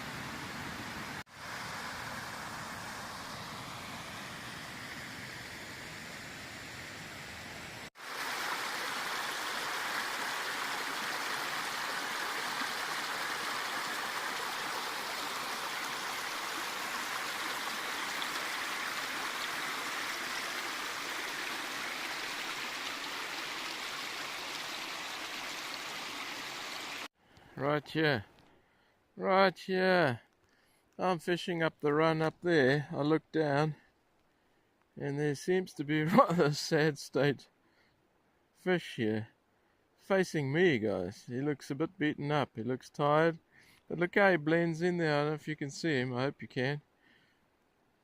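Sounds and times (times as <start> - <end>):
river water rushing: 0.0 - 5.6, 8.0 - 27.1.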